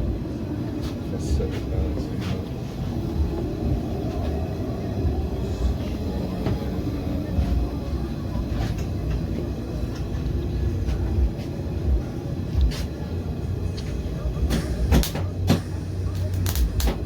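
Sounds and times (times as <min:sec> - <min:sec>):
welder arc buzzing and crackling: 0:16.1 - 0:17.0.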